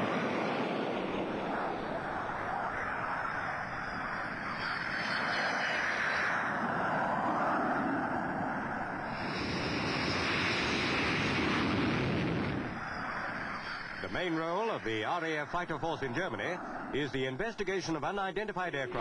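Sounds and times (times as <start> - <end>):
jet engines roaring: 0.0 - 19.0.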